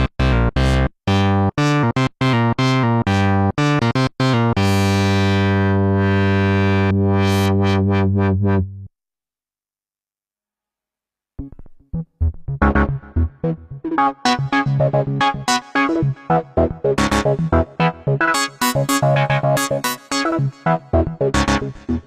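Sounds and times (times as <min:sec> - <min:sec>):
low synthesizer notes: 0:11.4 - 0:22.0.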